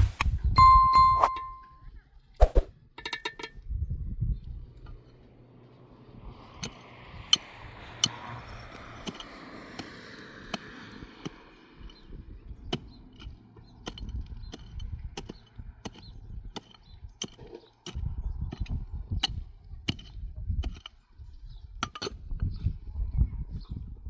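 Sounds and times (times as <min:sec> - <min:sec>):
hissing noise: 0:00.0 - 0:00.4
low rumbling: 0:03.6 - 0:24.0
sharp tool strikes: 0:09.0 - 0:12.1, 0:12.7 - 0:20.9.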